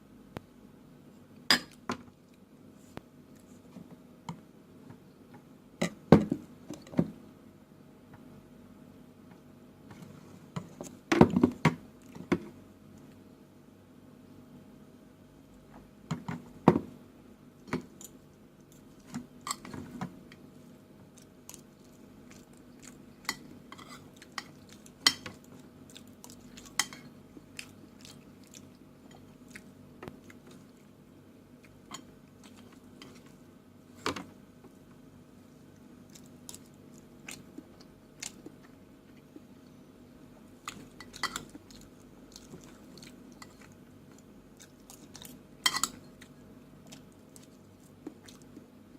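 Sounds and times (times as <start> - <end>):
faint steady hum: 0.0 - 48.9
chewing: 21.1 - 31.0, 31.6 - 33.4, 36.0 - 39.5, 40.6 - 48.7.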